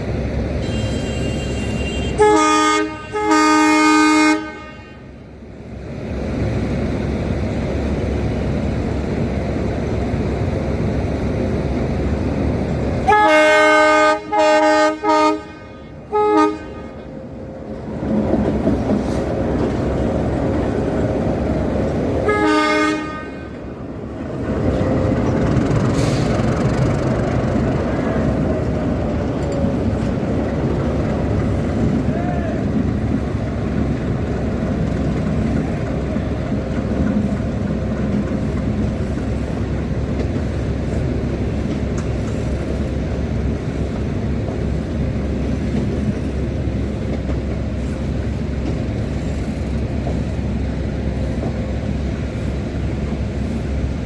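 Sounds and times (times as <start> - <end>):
diesel engine rumbling: 0.0 - 54.0
locomotive horn blasts: 0.6 - 5.1, 13.0 - 17.1, 22.2 - 23.6.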